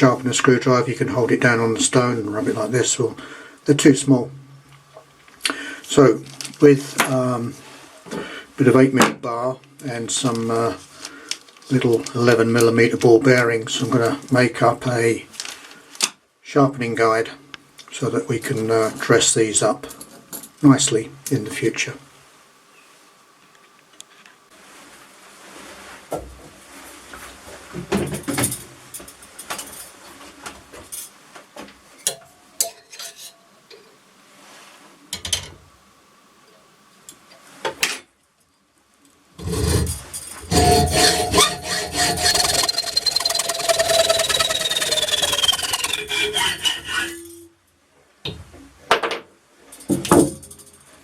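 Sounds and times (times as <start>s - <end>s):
rasping strokes: 39.4s - 47.5s
power tool cutting: 40.4s - 47.4s.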